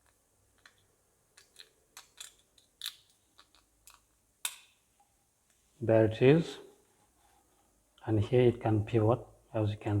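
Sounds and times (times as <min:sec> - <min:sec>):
plastic parts clicking and scraping: 0:00.0 - 0:04.7.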